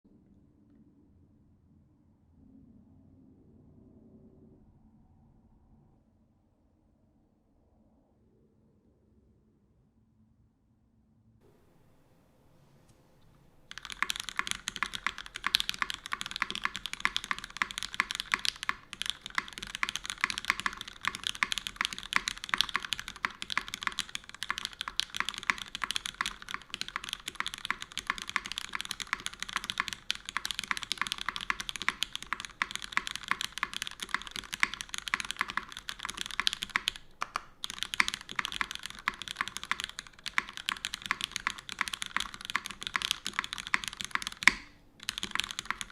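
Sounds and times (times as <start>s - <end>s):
mechanical keyboard typing: 13.7s - 45.9s.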